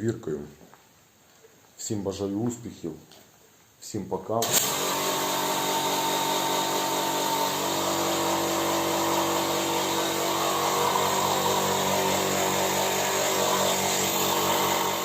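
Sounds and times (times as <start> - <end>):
motor-driven machine humming: 4.4 - 15.0.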